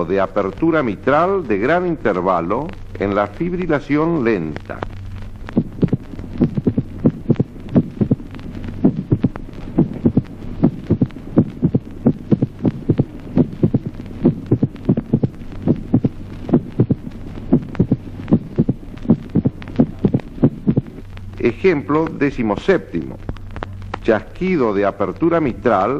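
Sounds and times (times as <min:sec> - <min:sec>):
steady low hum: 0:00.0 - 0:25.9
heartbeat through stethoscope: 0:04.7 - 0:24.0.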